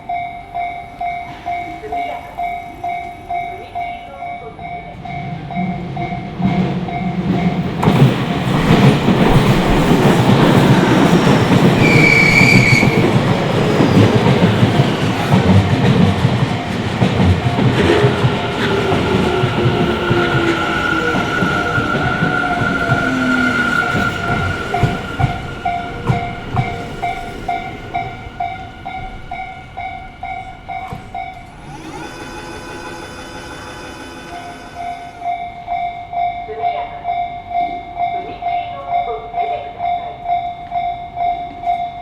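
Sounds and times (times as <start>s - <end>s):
level-crossing bell clanging: 0.0s - 42.0s
train steady whine: 0.0s - 42.0s
train wheels knocking on rail joints: 6.0s - 31.8s.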